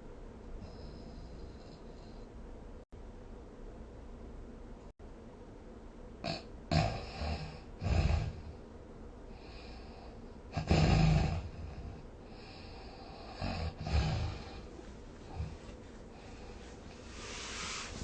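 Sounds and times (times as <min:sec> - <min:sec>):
person snoring: 0:06.2 - 0:08.6, 0:09.4 - 0:18.0
soft breathy breathing: 0:09.3 - 0:10.5, 0:11.4 - 0:18.0.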